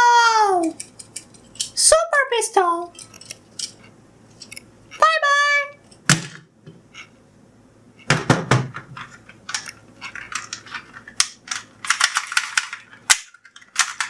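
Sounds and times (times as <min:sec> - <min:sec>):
plastic toys clicking and knocking: 0:00.6 - 0:01.8, 0:08.1 - 0:14.0.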